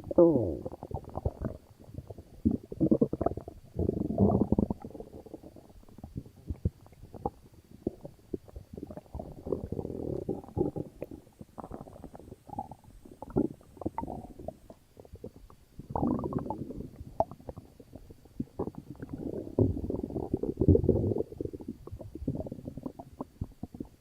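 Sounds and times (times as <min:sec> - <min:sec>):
stomach gurgling and rumbling: 0:00.0 - 0:24.0.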